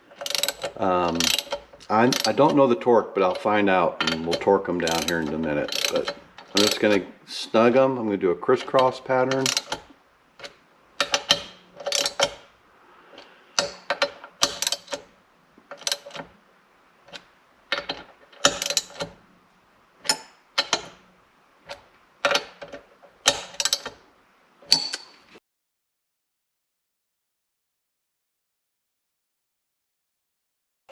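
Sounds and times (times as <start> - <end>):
ratchet wrench clicking: 0.2 - 2.5, 3.3 - 6.9, 9.3 - 12.4, 13.6 - 15.1, 15.7 - 16.2, 17.1 - 19.2, 20.0 - 21.0, 21.7 - 24.0.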